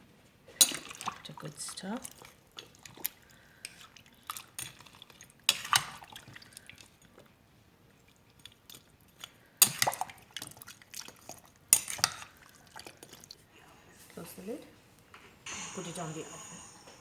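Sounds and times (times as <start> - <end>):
spoon stirring food in a pot: 0.5 - 13.5
spoon clinking against metal pot: 0.6 - 6.6, 8.4 - 13.2.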